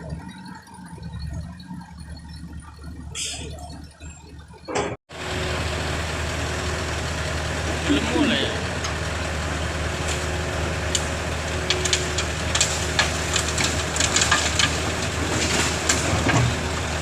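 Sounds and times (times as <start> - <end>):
heavy vehicle engine idling: 0.0 - 17.0
sharp cracks and crunches: 11.7 - 16.5.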